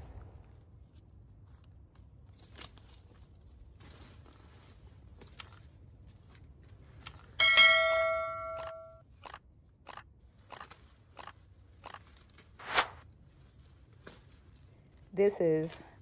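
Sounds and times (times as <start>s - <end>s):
corn plants snapping and rustling: 1.5s - 7.4s
bell-like ring: 7.4s - 9.0s.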